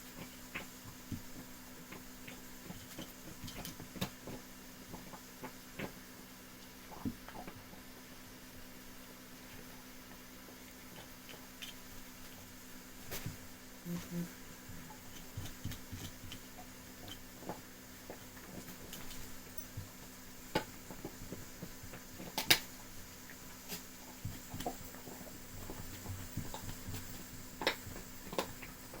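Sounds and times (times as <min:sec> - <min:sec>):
dog gnawing a chew: 0:14.6 - 0:29.0.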